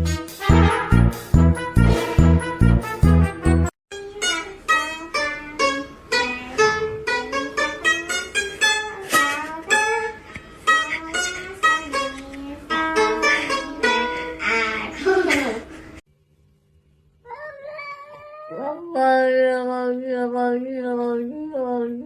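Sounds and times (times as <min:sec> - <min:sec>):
plucked-string tune: 0:01.6 - 0:14.6.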